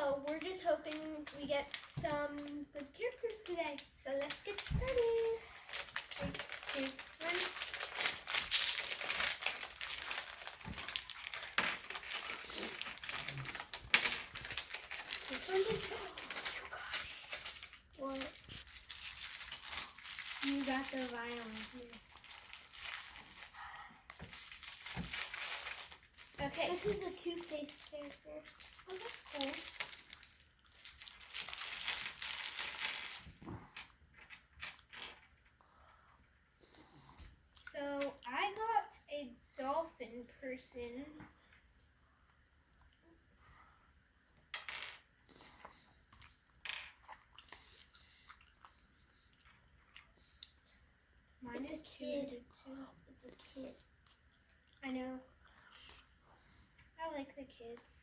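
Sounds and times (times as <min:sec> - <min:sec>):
packets torn open and crinkled: 0:04.2 - 0:33.7.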